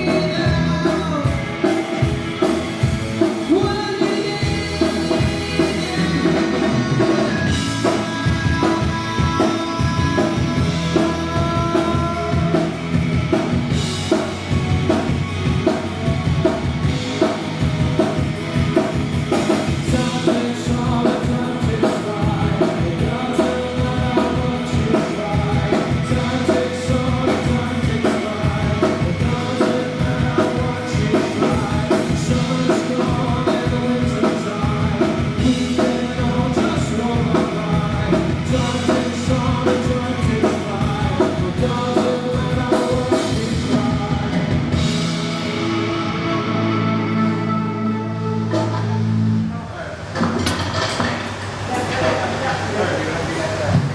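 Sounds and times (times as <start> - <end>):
person singing: 0.0 - 12.9, 19.4 - 45.1
drum kit beat: 0.0 - 45.8
rock music: 0.0 - 53.9.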